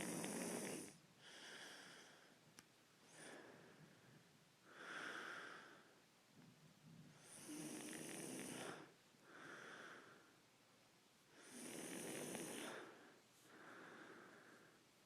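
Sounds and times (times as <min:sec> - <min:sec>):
man snoring: 0:00.0 - 0:01.0, 0:07.2 - 0:09.6, 0:11.4 - 0:13.0
quiet breath: 0:00.0 - 0:10.5, 0:11.3 - 0:15.0.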